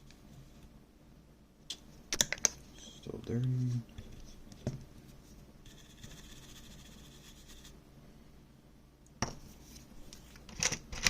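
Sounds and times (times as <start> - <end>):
toothbrush scrubbing circuit board: 5.7 - 7.8.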